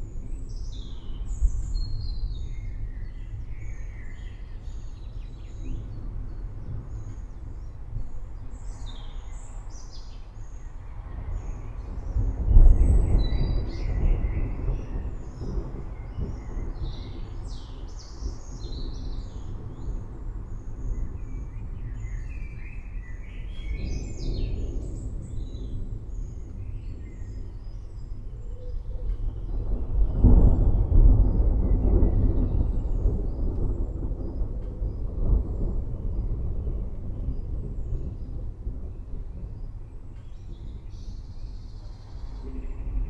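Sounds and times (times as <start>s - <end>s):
thunder rumbling: 0.0s - 43.0s.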